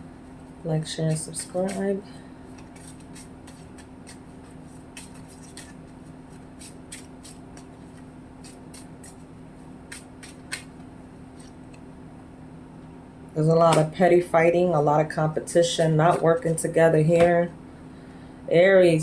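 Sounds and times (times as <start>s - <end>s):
faint steady hum: 0.0s - 19.0s
cards being shuffled: 1.1s - 1.8s, 2.5s - 9.3s, 9.9s - 11.6s.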